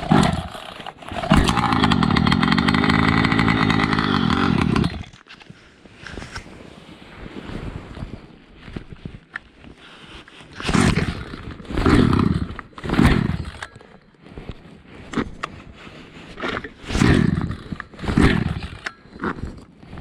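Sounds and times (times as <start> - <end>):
chainsaw engine bursts: 0.0 - 5.2, 10.7 - 13.8, 16.9 - 19.0.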